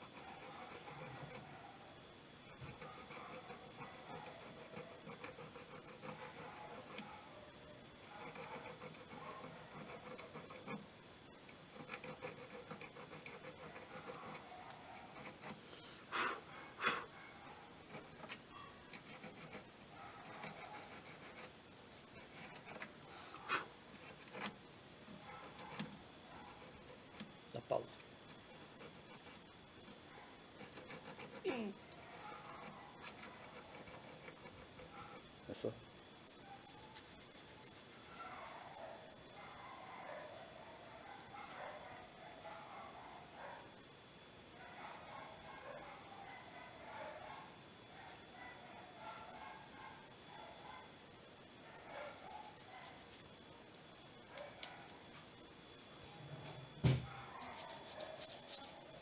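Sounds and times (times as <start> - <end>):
hand rubbing and scraping metal: 57.4 - 59.0.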